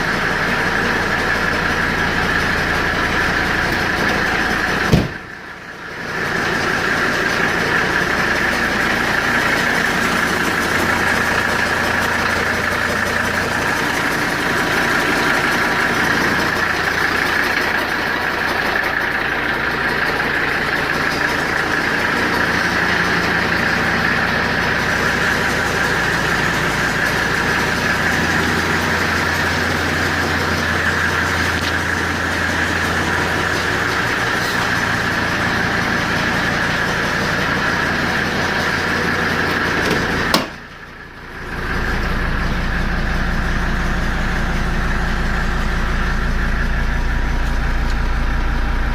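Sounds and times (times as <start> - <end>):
car engine idling: 0.0 - 48.9
fan whirring: 6.2 - 48.9.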